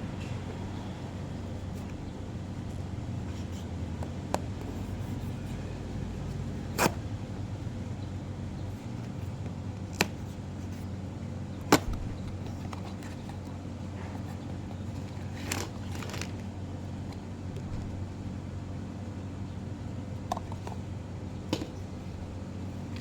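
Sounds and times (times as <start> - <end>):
packaging rustle: 14.2 - 16.6.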